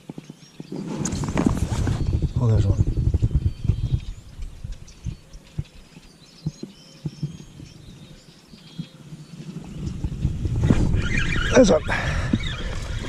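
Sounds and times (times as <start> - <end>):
faint bird chirps: 0.2 - 13.0
soft low thumps: 1.1 - 8.1, 9.7 - 11.0.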